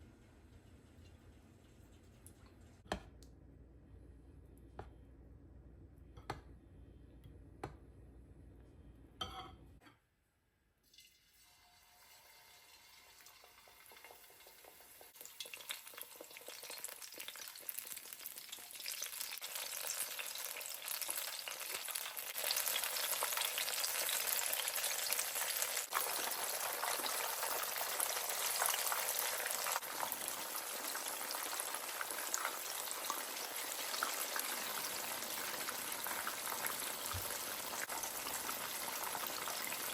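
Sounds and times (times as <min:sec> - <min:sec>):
fritters sizzling in hot oil: 0:11.7 - 0:39.9.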